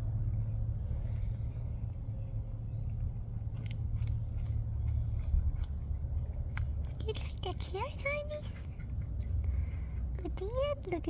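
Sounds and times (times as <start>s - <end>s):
steady low rumble: 0.0s - 11.0s
rabbit crunching a carrot: 2.9s - 11.0s.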